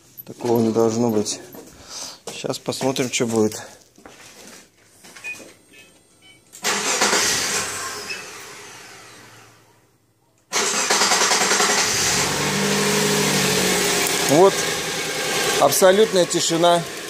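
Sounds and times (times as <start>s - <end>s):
car engine running steadily: 11.8s - 17.0s.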